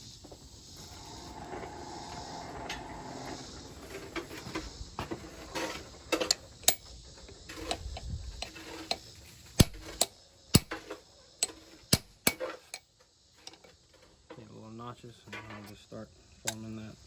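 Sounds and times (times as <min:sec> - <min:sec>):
light metallic clinks: 0:06.3 - 0:07.0.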